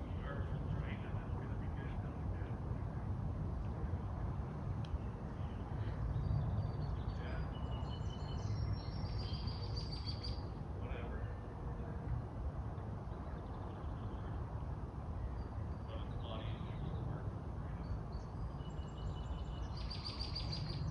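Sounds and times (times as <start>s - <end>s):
low outdoor rumble: 0.0s - 20.9s
small birds chirping: 4.8s - 12.0s, 12.8s - 20.9s.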